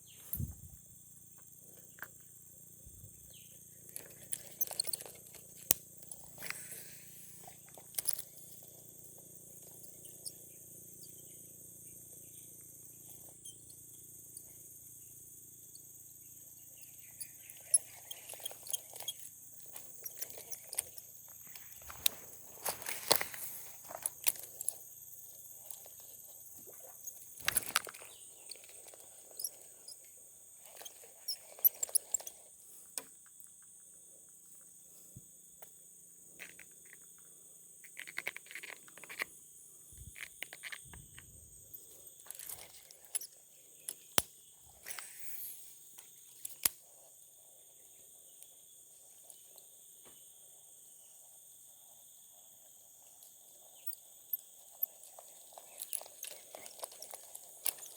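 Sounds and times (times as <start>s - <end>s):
high-pitched insect chorus: 0.0s - 57.9s
rustling from handling: 19.8s - 24.7s.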